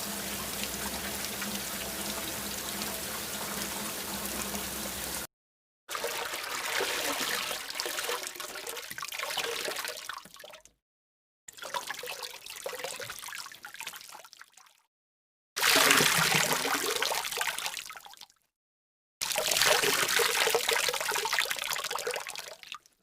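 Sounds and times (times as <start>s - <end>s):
rushing water hiss: 0.0s - 5.3s
water trickling and pouring: 0.0s - 5.3s, 5.9s - 10.7s, 11.5s - 14.8s, 19.2s - 22.9s.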